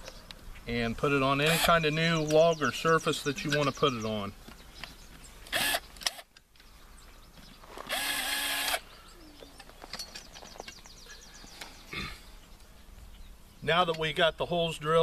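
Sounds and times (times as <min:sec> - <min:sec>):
electric drill boring into wood: 0:05.5 - 0:06.2, 0:07.9 - 0:08.8.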